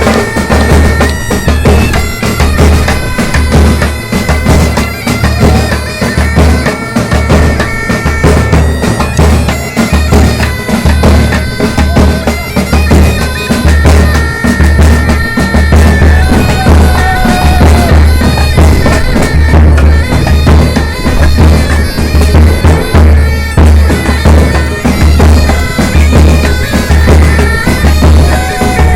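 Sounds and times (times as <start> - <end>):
high held melody line: 0.0 - 28.9.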